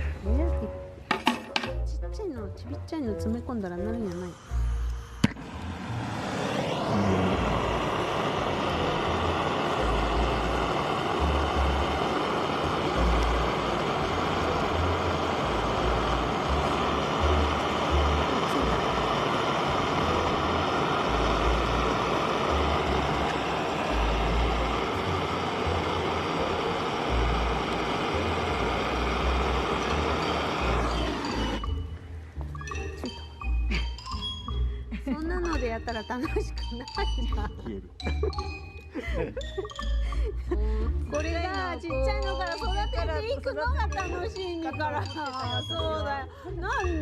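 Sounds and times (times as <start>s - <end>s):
gas torch roaring hiss: 0.0s - 0.4s, 3.8s - 34.7s
low rumble: 3.4s - 32.3s.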